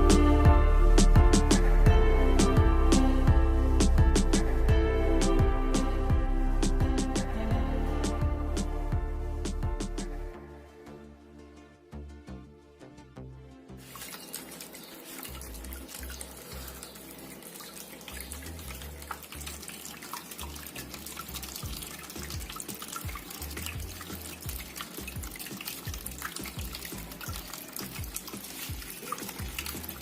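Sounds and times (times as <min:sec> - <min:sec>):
water drips: 0:13.8 - 0:30.0
water fountain splashing: 0:13.8 - 0:30.0.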